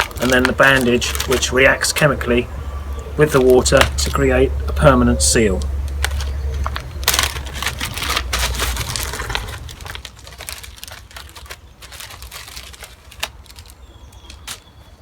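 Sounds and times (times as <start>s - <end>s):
low hum: 0.0s - 11.0s.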